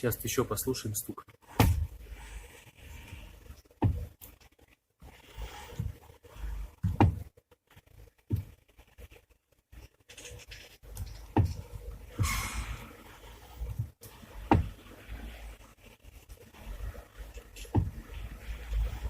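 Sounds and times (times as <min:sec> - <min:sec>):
steering unit knocking: 0:06.8 - 0:07.3, 0:11.3 - 0:12.4, 0:14.5 - 0:14.8, 0:17.7 - 0:18.0.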